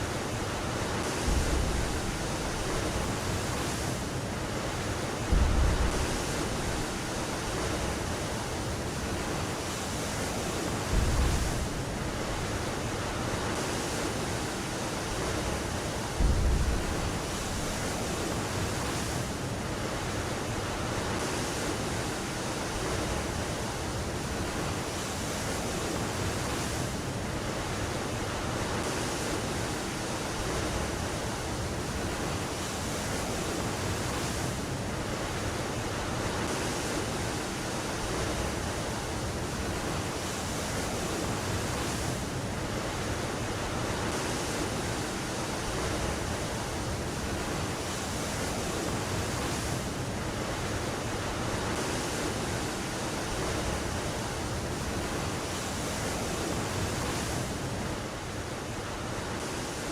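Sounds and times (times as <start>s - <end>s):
wind and sea noise: 0.0s - 59.9s
low thuds: 1.2s - 3.4s, 5.2s - 7.0s, 16.2s - 17.2s.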